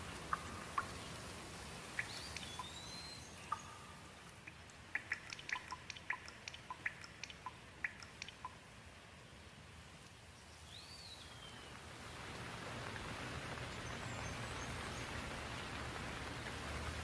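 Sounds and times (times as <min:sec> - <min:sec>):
rain hiss: 0:00.0 - 0:17.0
bird call: 0:01.9 - 0:08.6.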